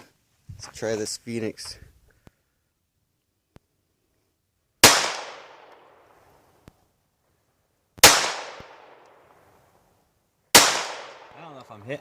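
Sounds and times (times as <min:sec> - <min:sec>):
pistol shots with echo: 0:04.8 - 0:06.0, 0:08.0 - 0:09.2, 0:10.5 - 0:11.4.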